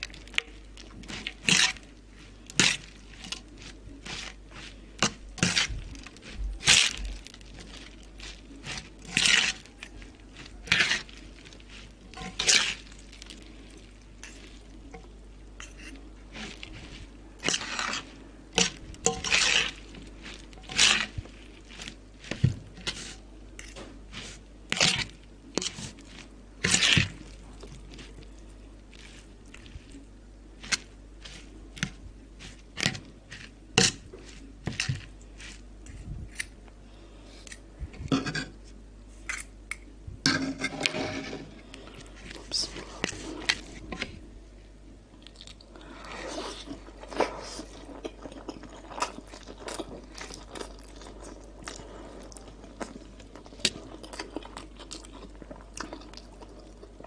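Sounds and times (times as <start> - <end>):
crunching and chewing food: 0.0 - 38.1, 45.1 - 57.0.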